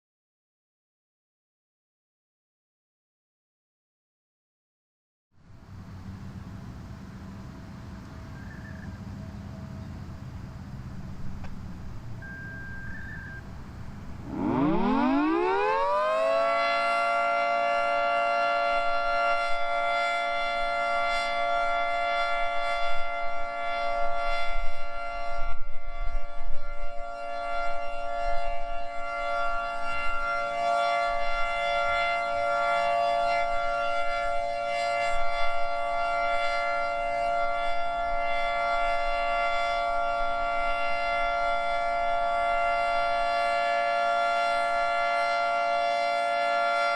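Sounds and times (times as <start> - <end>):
two-tone warning siren: 12.1 - 46.9.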